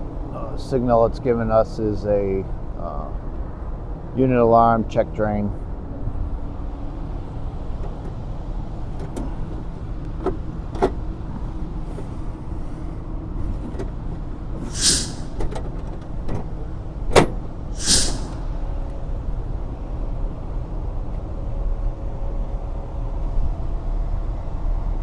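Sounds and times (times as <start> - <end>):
rooftop hvac unit rumbling: 0.0 - 25.0
short hissing swishes: 14.7 - 15.4, 17.8 - 18.5.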